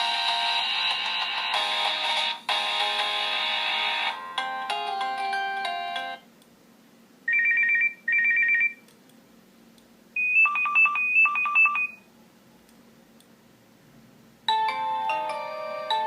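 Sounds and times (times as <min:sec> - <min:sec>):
phone melodic ringtone: 0:00.0 - 0:06.2, 0:10.2 - 0:12.0, 0:14.5 - 0:16.0
rapid high phone beeps: 0:10.2 - 0:12.0.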